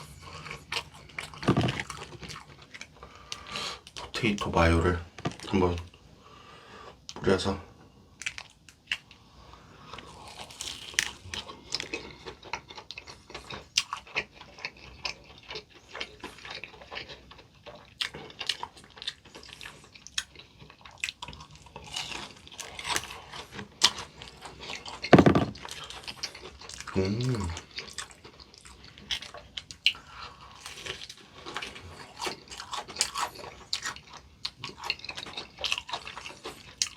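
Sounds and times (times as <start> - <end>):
crispy chewing crunches: 9.9 - 36.9.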